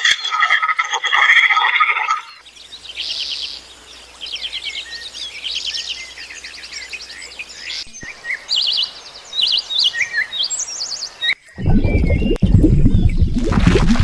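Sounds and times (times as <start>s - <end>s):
small songbirds chirping: 2.4s - 13.1s.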